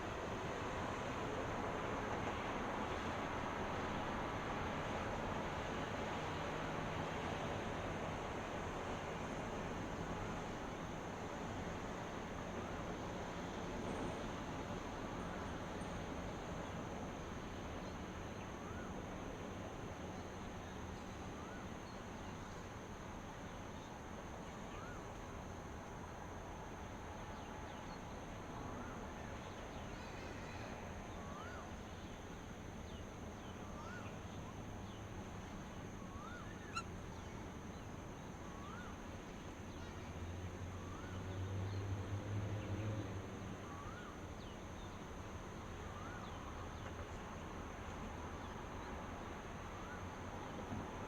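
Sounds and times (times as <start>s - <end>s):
high insect drone: 14.0s - 50.7s
bird call: 36.1s - 37.4s.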